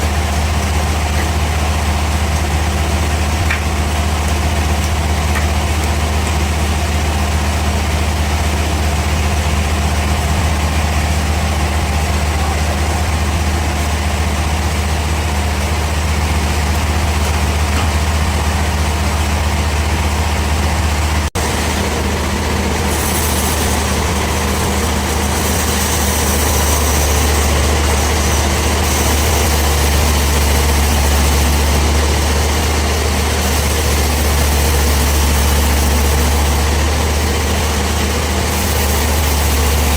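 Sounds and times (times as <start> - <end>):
bandsaw low drone: 0.0 - 39.9
harsh hiss: 6.0 - 39.9.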